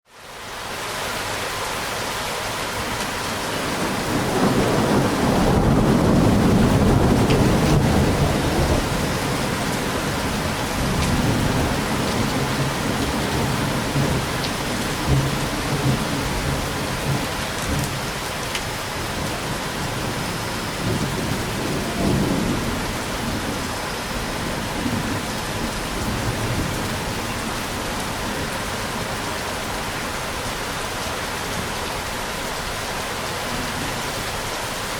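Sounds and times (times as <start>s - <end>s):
heavy rain: 0.1s - 34.9s
thunder rumbling: 3.5s - 30.5s.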